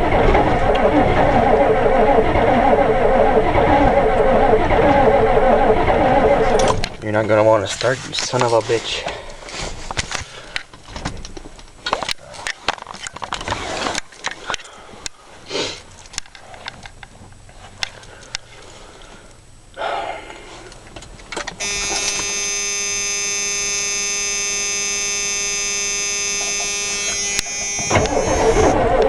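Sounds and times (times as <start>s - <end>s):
diesel engine starting: 0.0s - 7.6s, 21.6s - 29.0s
steady electric buzz: 21.6s - 28.8s.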